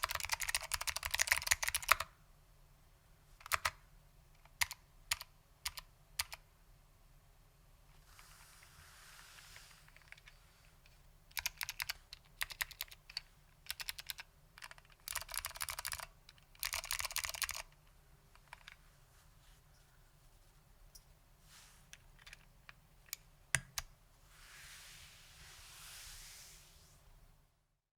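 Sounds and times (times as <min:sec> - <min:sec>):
clicky keyboard typing: 0:00.0 - 0:02.1, 0:03.4 - 0:03.8, 0:04.4 - 0:06.4, 0:11.3 - 0:17.8.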